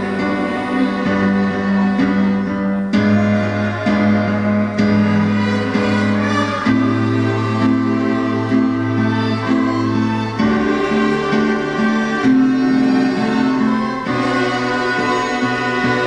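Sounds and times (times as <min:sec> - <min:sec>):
bowed string music: 0:00.0 - 0:16.0.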